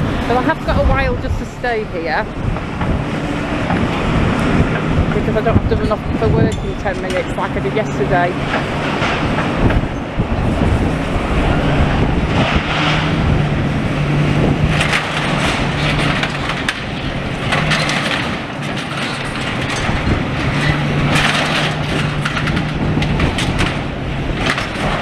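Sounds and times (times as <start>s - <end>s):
excavator diesel engine humming: 0.0s - 25.0s
wind buffeting microphone: 0.0s - 25.0s
debris crunching and cracking: 8.3s - 25.0s.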